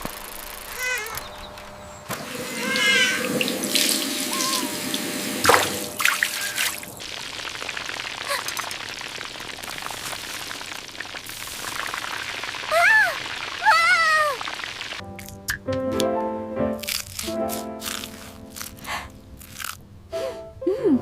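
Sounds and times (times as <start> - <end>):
water pouring and trickling: 2.1 - 15.4, 16.8 - 19.8.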